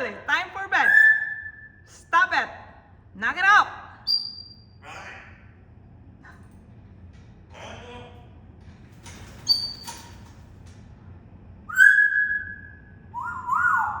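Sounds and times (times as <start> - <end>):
parrot chirp: 0.8 - 1.8, 4.0 - 5.2, 11.7 - 14.0
parrot whistling: 0.8 - 1.8, 11.7 - 14.0.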